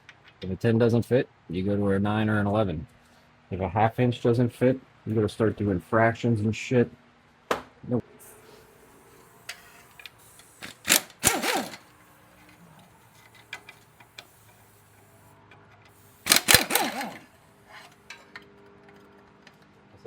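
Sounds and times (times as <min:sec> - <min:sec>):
pneumatic impact wrench whining: 0:10.4 - 0:11.9, 0:16.1 - 0:17.3
sockets and tools clicking: 0:10.6 - 0:11.8, 0:16.3 - 0:17.2.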